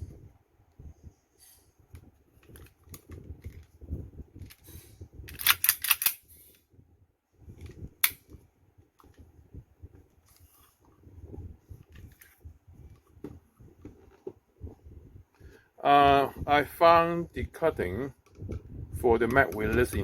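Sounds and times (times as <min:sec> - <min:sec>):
sharp pistol clicks: 0:05.3 - 0:06.2
soft knocks and rubbing: 0:11.9 - 0:14.8.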